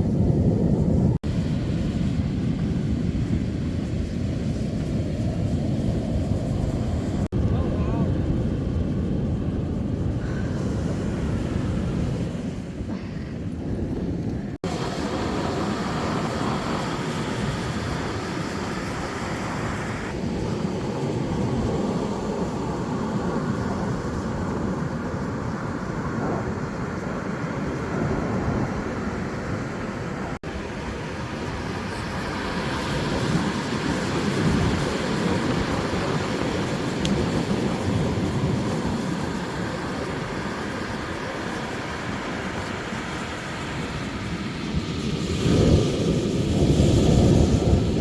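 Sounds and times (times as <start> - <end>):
ocean surf rumbling: 0.0 - 48.0
wind buffeting microphone: 0.0 - 48.0.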